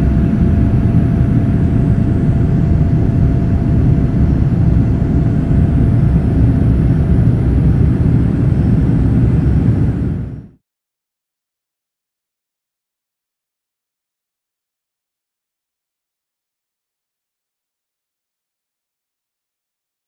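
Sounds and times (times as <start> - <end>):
jet engines rumbling in cabin: 0.0 - 10.6.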